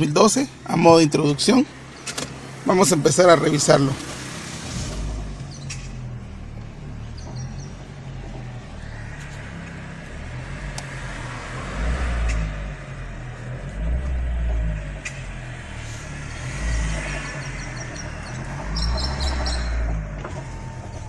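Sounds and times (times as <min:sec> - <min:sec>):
car engine rumbling: 0:00.0 - 0:21.0
engine knocking: 0:13.8 - 0:21.0.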